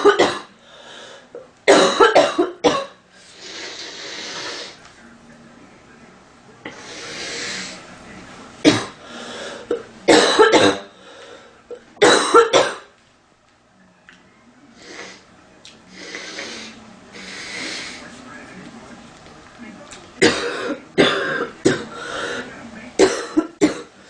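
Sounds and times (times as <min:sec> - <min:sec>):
woman coughing: 0:00.0 - 0:00.5, 0:01.7 - 0:03.0, 0:10.1 - 0:10.9, 0:12.0 - 0:12.9, 0:20.2 - 0:21.9, 0:23.0 - 0:23.9
woman breathing: 0:00.6 - 0:01.4, 0:09.0 - 0:09.7.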